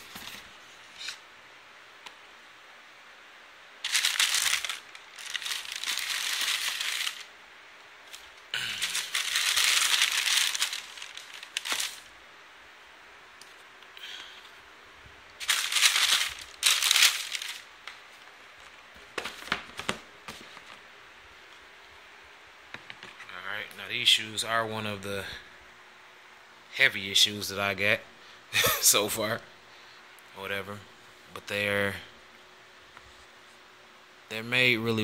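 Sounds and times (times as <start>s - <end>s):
packaging paper crinkling: 3.8s - 7.3s, 8.0s - 12.1s, 15.4s - 20.8s.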